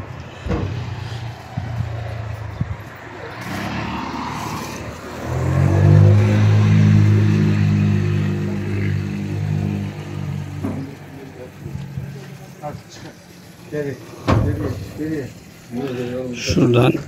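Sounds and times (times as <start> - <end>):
engine running: 0.0 - 17.0.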